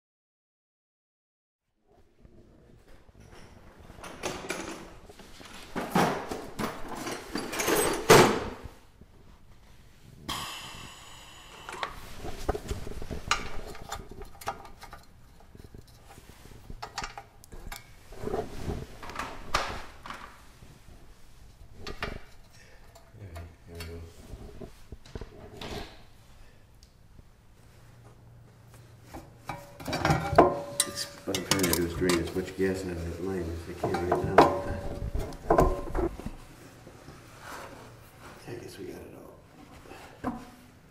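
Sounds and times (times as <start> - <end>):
metal tools clanking and clicking: 6.6 - 8.2, 29.5 - 32.4.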